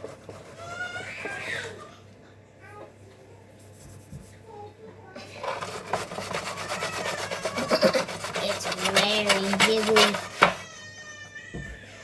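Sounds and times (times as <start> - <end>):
utensil scraping batter in bowl: 0.0 - 1.4, 5.2 - 10.8.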